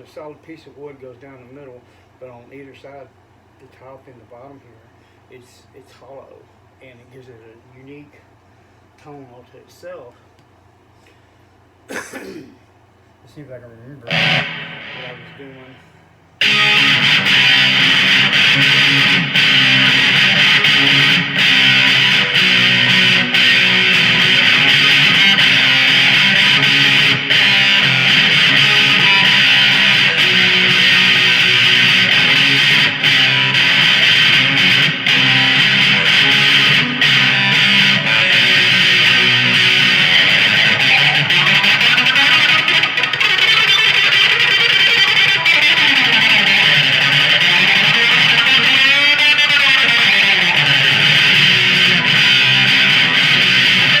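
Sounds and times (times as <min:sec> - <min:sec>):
electric guitar playing: 0:14.0 - 0:54.0.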